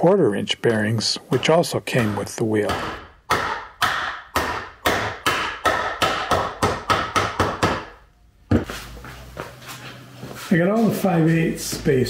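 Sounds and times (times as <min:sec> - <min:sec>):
hammer striking wheel hub: 0:01.4 - 0:08.0.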